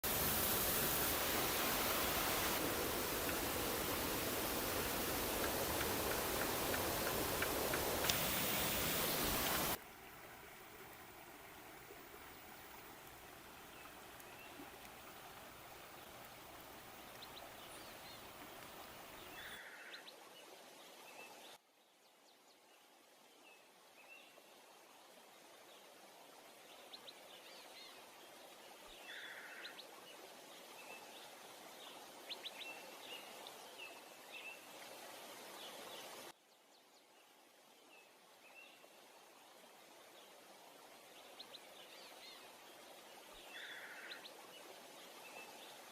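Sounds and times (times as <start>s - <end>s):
falling water rushing: 0.0s - 19.6s
soft hiss: 0.0s - 45.9s.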